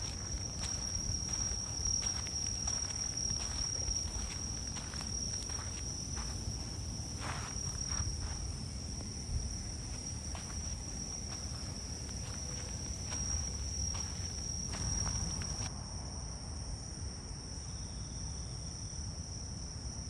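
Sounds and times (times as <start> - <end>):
soft footsteps on a path: 0.0 - 15.7
night insects trilling: 0.0 - 20.0.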